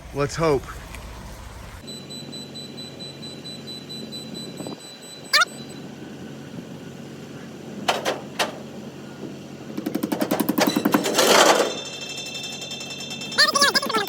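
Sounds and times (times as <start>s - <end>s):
truck rapid rattling pulse: 7.6s - 14.0s
sharp knocks: 7.9s - 8.7s, 9.7s - 11.7s.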